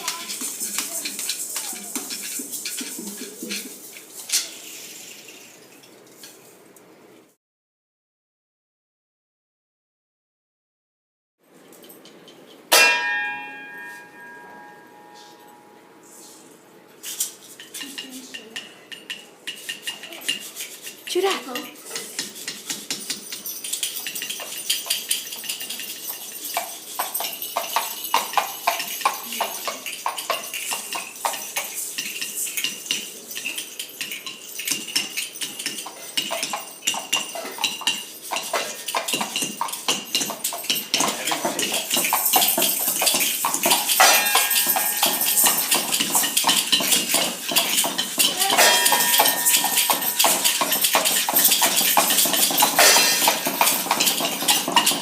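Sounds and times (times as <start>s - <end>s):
hand percussion clattering: 0.0s - 5.8s, 17.0s - 55.0s
bell-like ringing tones: 12.8s - 16.1s, 42.0s - 46.4s, 48.4s - 55.0s.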